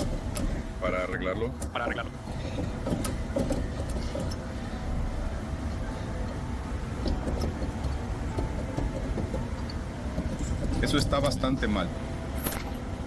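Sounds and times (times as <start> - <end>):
low mechanical rumble: 0.0 - 13.0.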